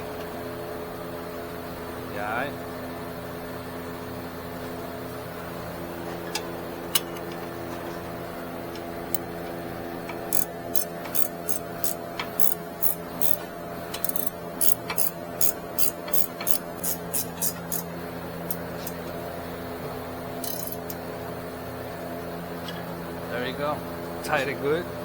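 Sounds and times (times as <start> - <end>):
steady hum: 0.0 - 25.0
ratchet wrench clicking: 10.1 - 17.9, 20.4 - 21.0.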